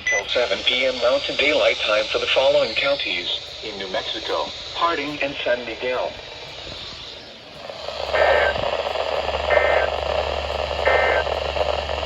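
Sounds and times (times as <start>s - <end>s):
digital data tones: 0.0s - 5.5s, 9.4s - 10.0s, 10.8s - 11.7s
low hum: 0.0s - 12.0s
radio hiss: 0.0s - 12.0s.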